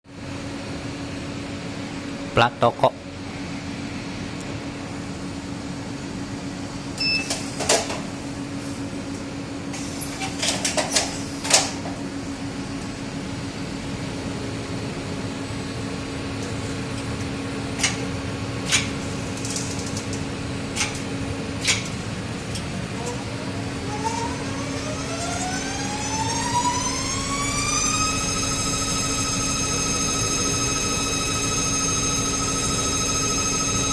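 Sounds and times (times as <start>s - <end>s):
brief beep: 7.0s - 7.4s
machine humming: 22.8s - 33.9s.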